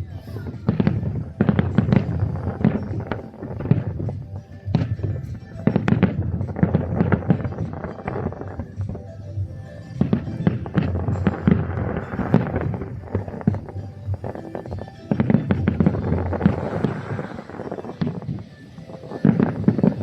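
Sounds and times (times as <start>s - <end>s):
fireworks bangs and crackles: 0.0s - 20.0s.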